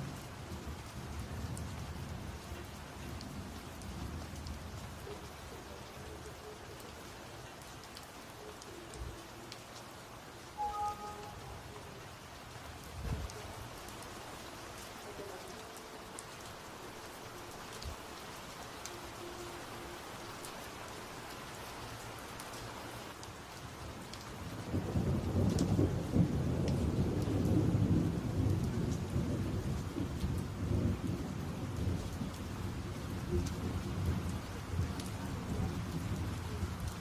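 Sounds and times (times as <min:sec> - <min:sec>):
steady rain: 0:00.0 - 0:37.0
thunder rumbling: 0:24.6 - 0:37.0.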